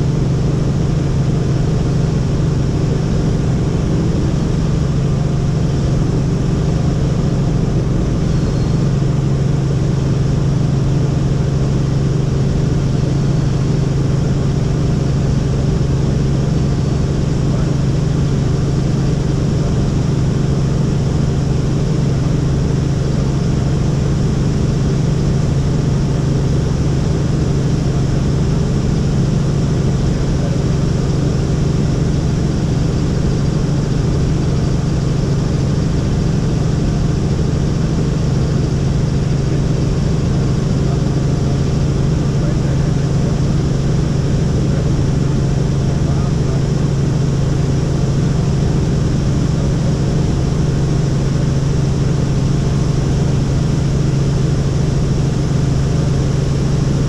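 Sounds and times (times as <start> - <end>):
helicopter engine and rotor drone: 0.0 - 57.0.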